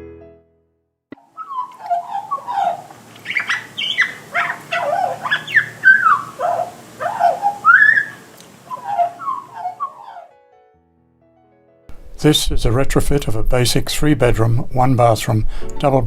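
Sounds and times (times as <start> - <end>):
faint steady hiss: 1.2 - 9.9
bird warbling song: 1.2 - 10.3.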